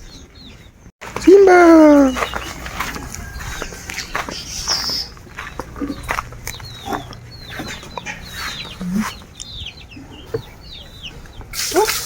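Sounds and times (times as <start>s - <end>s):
chickens clucking and chirping: 0.0s - 12.0s.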